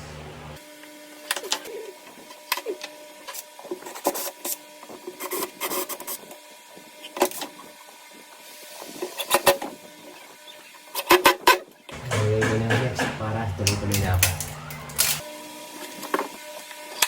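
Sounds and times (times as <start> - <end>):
sharp clicks and knocks: 11.9 - 15.2.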